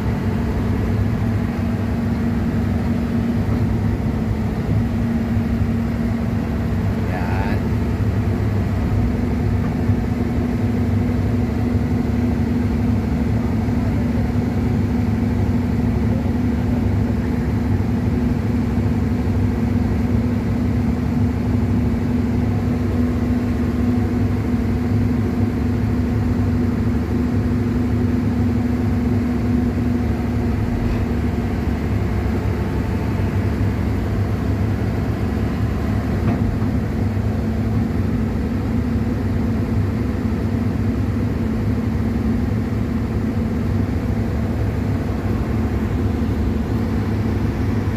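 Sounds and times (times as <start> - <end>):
diesel engine running steadily: 0.0 - 47.9.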